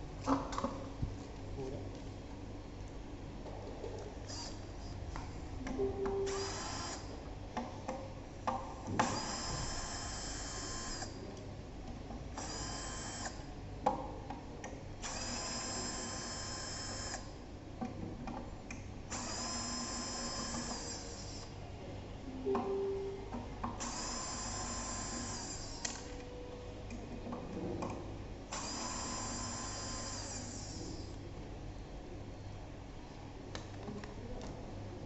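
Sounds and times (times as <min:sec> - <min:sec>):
handheld power tool motor whirring: 0:04.3 - 0:04.6, 0:06.3 - 0:07.1, 0:09.0 - 0:11.2, 0:12.4 - 0:13.4, 0:15.0 - 0:17.3, 0:19.1 - 0:21.5, 0:23.8 - 0:26.1, 0:28.5 - 0:31.1.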